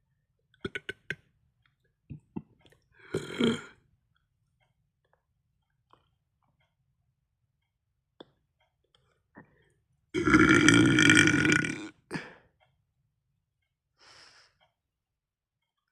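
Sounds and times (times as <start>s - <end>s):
person belching loudly: 0.6s - 1.2s, 3.1s - 3.8s, 10.2s - 12.2s.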